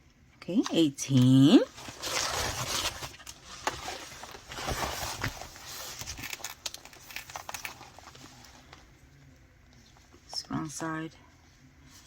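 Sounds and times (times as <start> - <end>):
plastic cover crinkling: 1.5 - 8.9.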